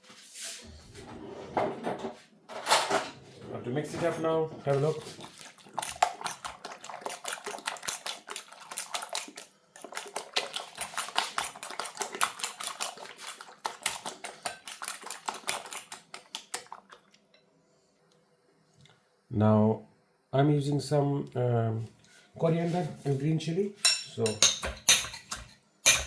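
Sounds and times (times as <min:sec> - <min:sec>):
eggs beaten in a bowl: 0:04.0 - 0:17.1, 0:23.9 - 0:26.0.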